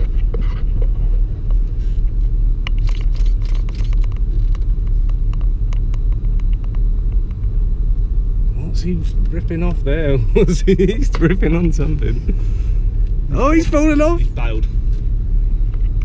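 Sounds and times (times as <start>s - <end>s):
car engine rumble from inside cabin: 0.0s - 16.0s
cooling fan running: 0.0s - 16.0s
clicks and scrapes on car bodywork: 2.7s - 7.4s.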